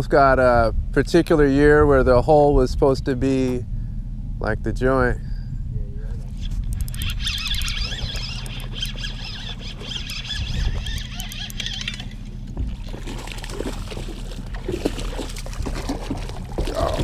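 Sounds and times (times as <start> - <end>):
boat engine idling: 3.3 - 17.0
high wavering chirping: 6.3 - 12.4.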